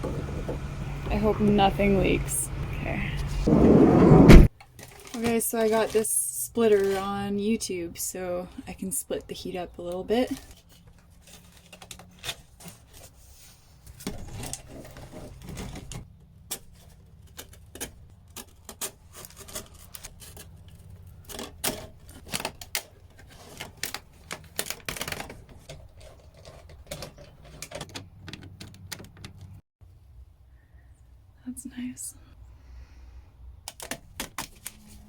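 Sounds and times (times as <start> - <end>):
low steady hum: 0.0 - 4.5
hard parts clicking and tapping: 19.5 - 29.6.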